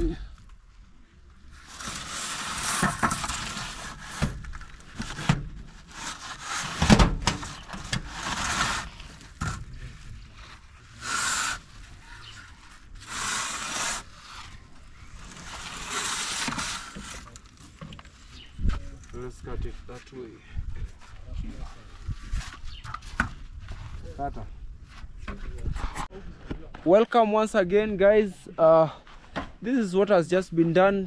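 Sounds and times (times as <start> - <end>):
plastering tools scraping wall: 1.6 - 9.6, 10.9 - 17.4.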